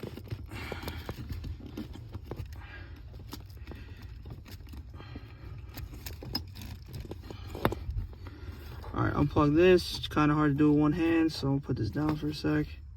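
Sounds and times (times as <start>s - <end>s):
low steady rumble: 0.0s - 12.9s
plastic connector clicks and scrapes: 5.5s - 8.8s.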